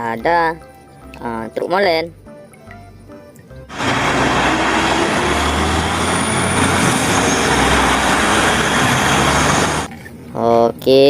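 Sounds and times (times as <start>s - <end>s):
heavy truck engine: 3.7s - 9.9s.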